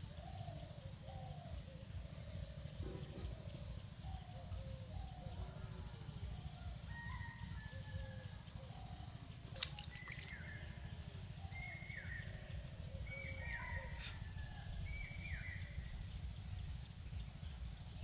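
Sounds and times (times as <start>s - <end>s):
birds calling: 8.6s - 18.0s
steady low rumble: 10.4s - 18.0s.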